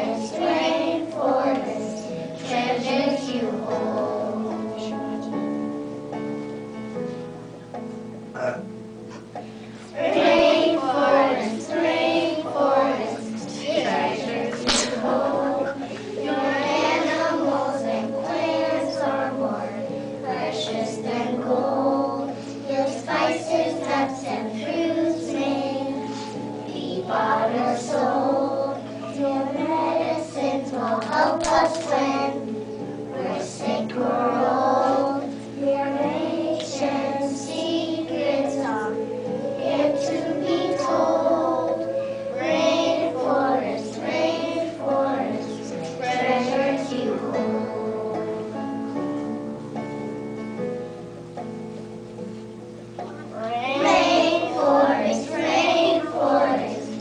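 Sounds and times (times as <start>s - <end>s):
children singing together: 0.0s - 5.8s, 8.4s - 49.9s, 52.9s - 57.0s
instrumental accompaniment: 0.0s - 57.0s.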